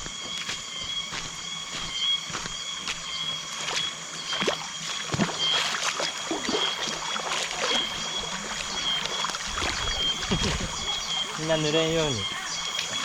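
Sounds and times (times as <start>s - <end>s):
water splashes and plinks: 2.9s - 13.0s
stream gurgling over rocks: 3.4s - 13.0s.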